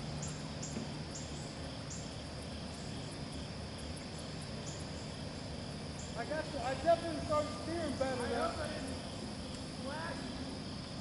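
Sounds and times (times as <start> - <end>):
insects chirping: 0.0 - 11.0
steady background hiss: 0.0 - 11.0.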